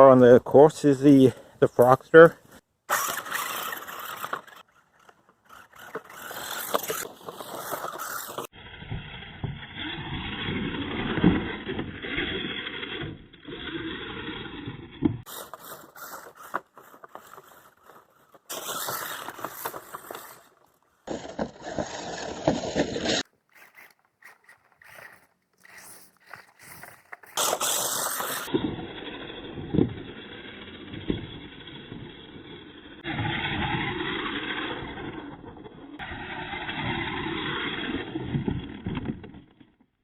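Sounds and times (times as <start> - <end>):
tyres scraping over dirt: 1.8 - 35.3
rally car engine: 22.8 - 39.1.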